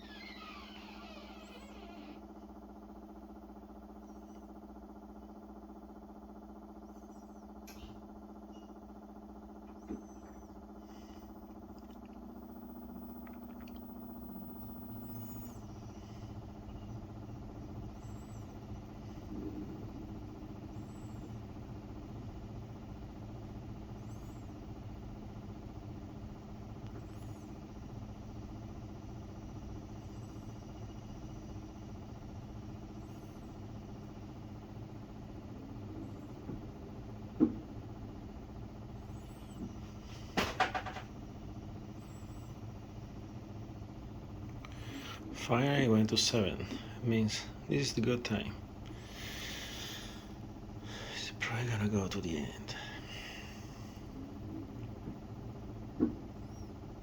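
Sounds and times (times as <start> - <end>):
higher-pitched hum: 0.0 - 2.3, 9.9 - 16.8
washing machine motor hum: 0.0 - 57.0.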